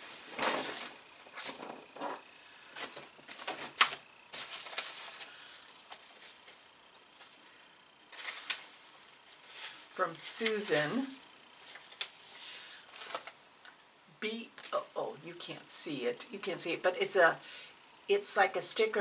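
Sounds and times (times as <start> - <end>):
paper rustling and crinkling: 0.0 - 13.4.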